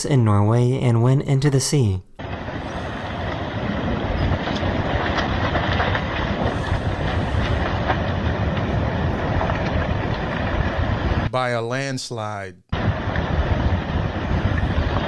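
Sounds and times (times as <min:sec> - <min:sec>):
landslide rumble: 0:02.2 - 0:15.0
cracks and snaps: 0:04.3 - 0:10.6.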